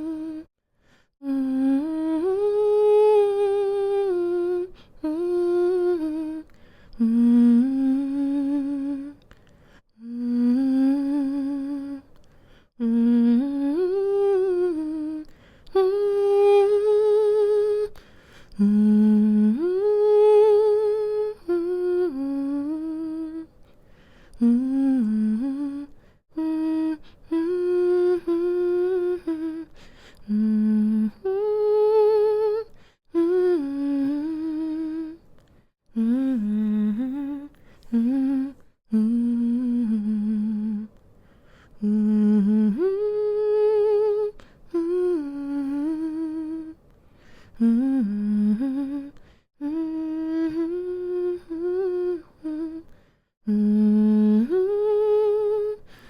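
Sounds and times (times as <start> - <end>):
woman humming a lullaby: 0.0 - 0.5, 10.0 - 12.1, 35.9 - 40.9, 41.8 - 46.8, 47.6 - 52.9, 53.5 - 55.8.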